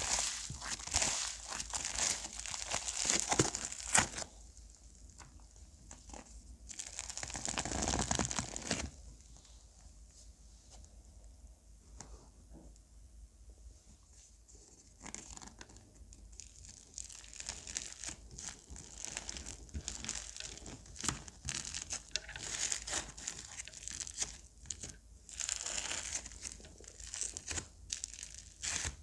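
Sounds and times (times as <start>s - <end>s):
slime squeezed by hand crackling: 0.0s - 4.4s, 16.4s - 29.0s.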